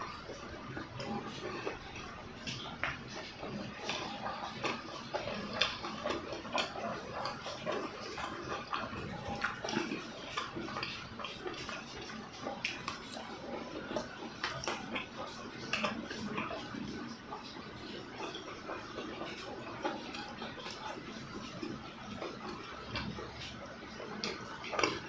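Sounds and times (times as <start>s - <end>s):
person chewing: 0.0s - 17.4s.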